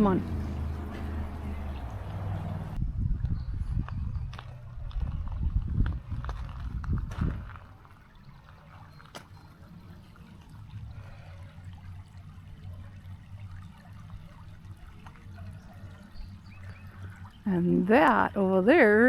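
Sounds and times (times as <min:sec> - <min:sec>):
creek water trickling: 0:00.0 - 0:19.0.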